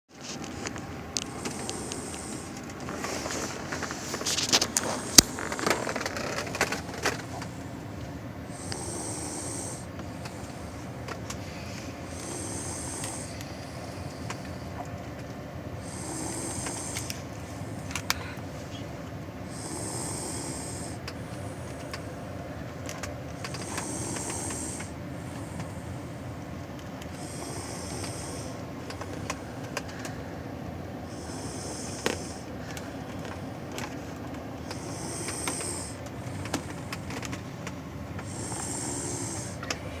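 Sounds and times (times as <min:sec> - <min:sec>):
person snoring: 0:01.2 - 0:07.4, 0:08.5 - 0:10.8, 0:11.4 - 0:14.3, 0:15.8 - 0:22.3, 0:23.4 - 0:26.2, 0:27.1 - 0:30.3, 0:31.0 - 0:32.9, 0:34.6 - 0:37.2, 0:38.2 - 0:40.0.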